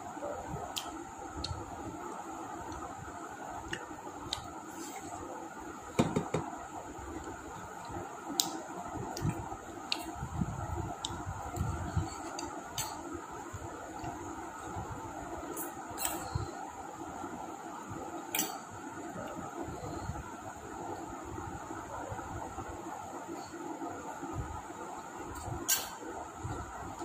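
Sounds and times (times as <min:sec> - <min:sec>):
background hum: 0:00.0 - 0:27.0
knock: 0:06.0 - 0:06.5.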